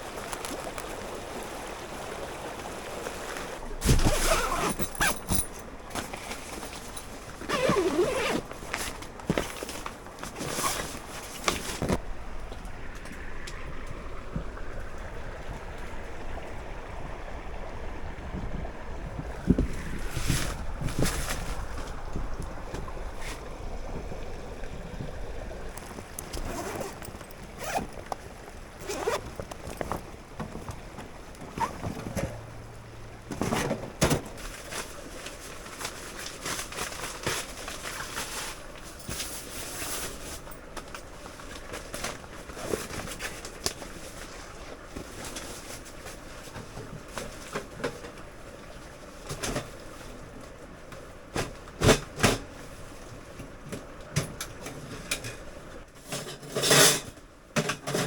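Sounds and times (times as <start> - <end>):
camp gear clattering: 3.2 - 13.5, 19.4 - 23.4, 25.6 - 48.3, 49.2 - 50.3, 51.3 - 58.0.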